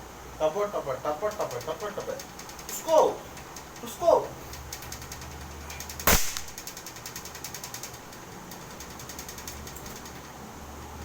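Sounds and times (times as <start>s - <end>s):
faint rapid clicks: 1.2s - 10.4s
air pistol shot: 6.0s - 6.6s.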